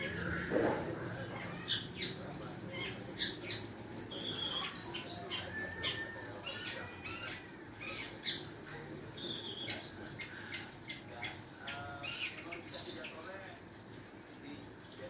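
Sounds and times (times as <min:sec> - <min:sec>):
bird harsh squawks and whistles: 0:02.9 - 0:08.4.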